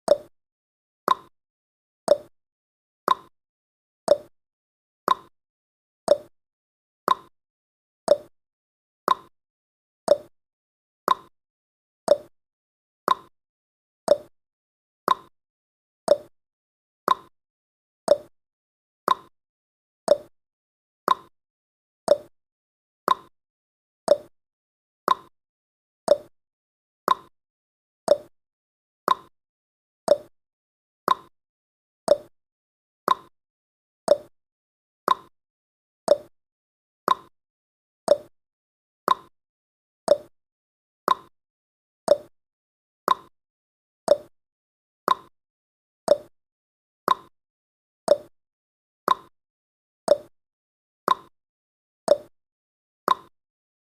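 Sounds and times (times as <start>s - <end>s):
timer ticking: 0.1s - 0.3s, 1.1s - 1.3s, 2.1s - 2.3s, 3.1s - 3.3s, 4.1s - 4.3s, 5.1s - 5.3s, 6.1s - 6.3s, 7.1s - 7.3s, 8.1s - 8.3s, 9.1s - 9.3s, 10.1s - 10.3s, 11.1s - 11.3s, 12.1s - 12.3s, 13.1s - 13.3s, 14.1s - 14.3s, 15.1s - 15.3s, 16.1s - 16.3s, 17.1s - 17.3s, 18.1s - 18.3s, 19.1s - 19.3s, 20.1s - 20.3s, 22.1s - 22.3s, 24.1s - 24.3s, 26.1s - 26.3s, 28.1s - 28.3s, 30.1s - 30.3s, 31.1s - 31.3s, 32.1s - 32.3s, 33.1s - 33.3s, 34.1s - 34.3s, 35.1s - 35.3s, 36.1s - 36.3s, 38.1s - 38.3s, 40.1s - 40.3s, 42.1s - 42.3s, 44.1s - 44.3s, 46.1s - 46.3s, 48.1s - 48.3s, 50.1s - 50.3s, 52.1s - 52.3s.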